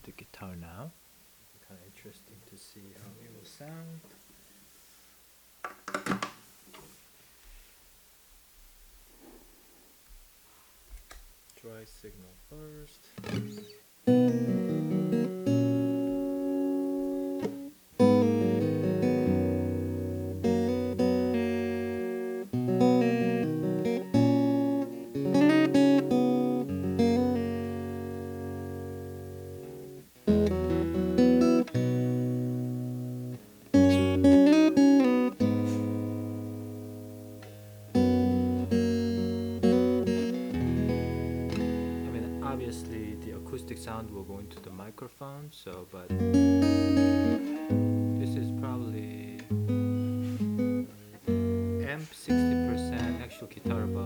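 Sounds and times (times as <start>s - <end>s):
clean guitar chords ringing: 13.4s - 44.8s, 46.1s - 54.0s.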